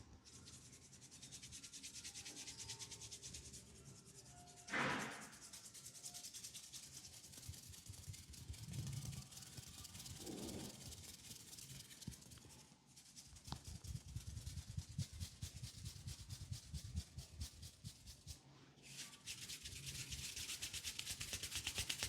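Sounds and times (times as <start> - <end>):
hands rubbing hair: 9.2 - 22.0.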